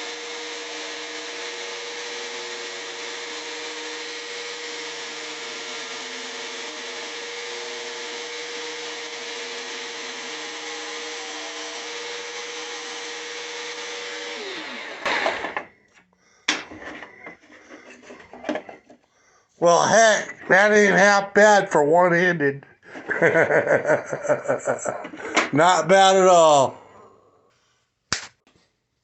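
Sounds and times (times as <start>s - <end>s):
motor winding down: 0.0s - 15.7s
jigsaw cutting wood: 0.0s - 15.8s, 23.1s - 26.6s.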